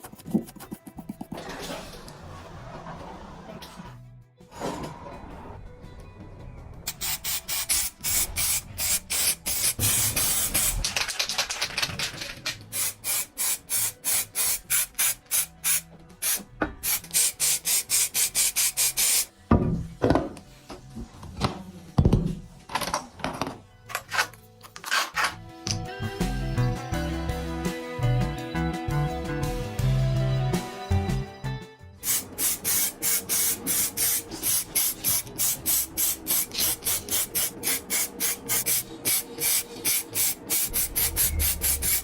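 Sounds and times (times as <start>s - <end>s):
background music: 0.0s - 42.0s.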